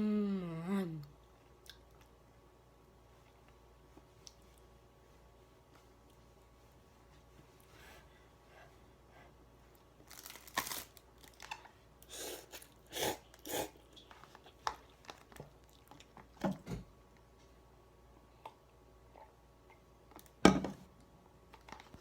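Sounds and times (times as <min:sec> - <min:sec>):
chewing and mouth sounds: 0:12.5 - 0:16.3.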